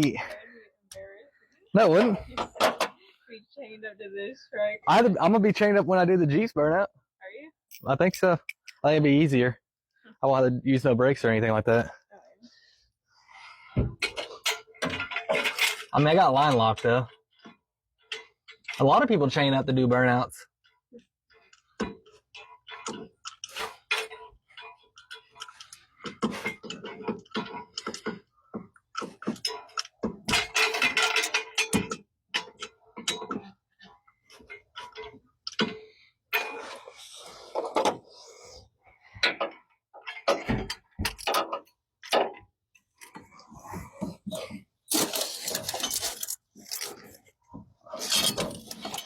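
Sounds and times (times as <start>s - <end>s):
hand tools and metal parts clinking: 7.7s - 8.8s, 14.0s - 19.5s, 21.4s - 37.3s, 39.2s - 49.0s.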